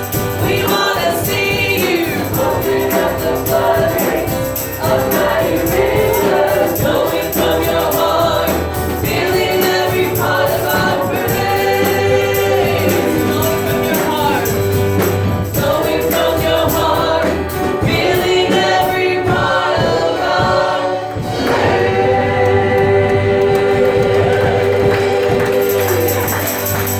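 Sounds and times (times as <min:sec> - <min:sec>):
tambourine: 0:00.0 - 0:19.4, 0:23.6 - 0:26.9
steady bass line: 0:00.0 - 0:20.6
group of singers: 0:00.0 - 0:26.9.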